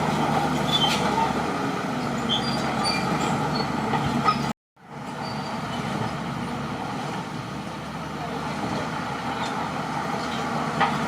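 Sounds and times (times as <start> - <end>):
bulldozer engine and tracks: 0.0 - 11.0
faint high squeaks: 2.2 - 4.5.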